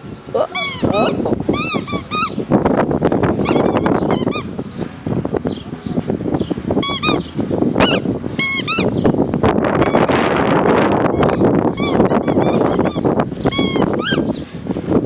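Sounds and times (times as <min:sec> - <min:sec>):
squeaky toy squeaking: 0:00.4 - 0:02.4, 0:03.4 - 0:04.5, 0:06.8 - 0:09.0, 0:09.8 - 0:14.3.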